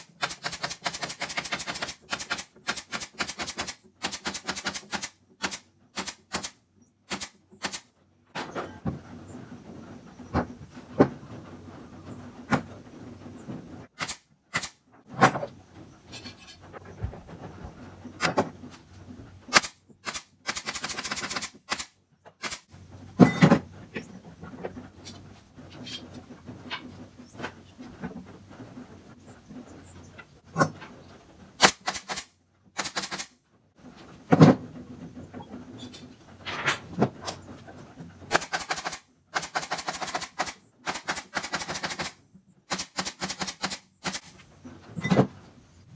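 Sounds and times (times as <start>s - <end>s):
parts knocking and clicking: 18.2s - 18.8s.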